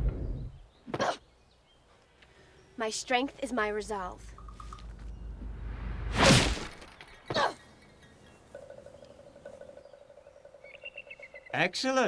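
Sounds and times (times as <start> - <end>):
falling sweep: 4.9 - 7.4
loud smashing crash: 5.4 - 7.3.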